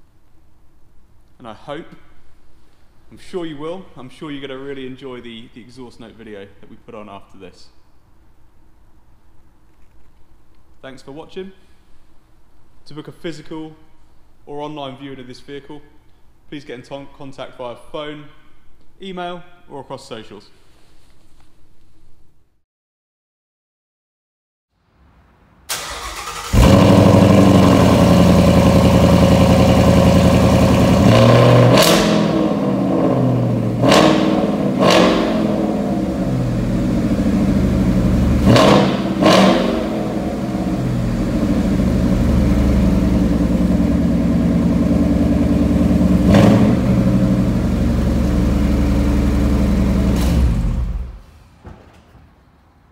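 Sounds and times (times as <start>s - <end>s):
engine idling: 25.7s - 31.1s, 35.9s - 51.2s
car engine cold start: 25.7s - 32.6s, 46.0s - 51.5s
engine revving: 25.7s - 51.2s.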